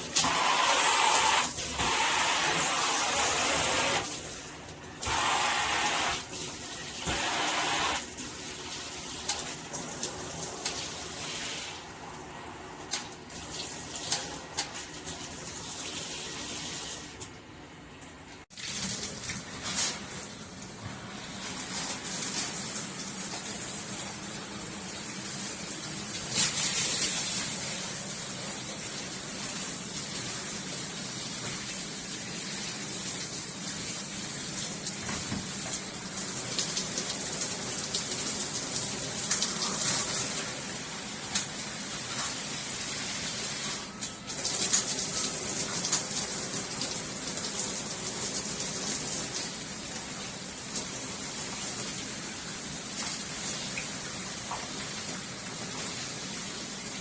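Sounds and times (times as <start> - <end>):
water spraying from shower head: 0.0 - 6.3, 7.0 - 8.2.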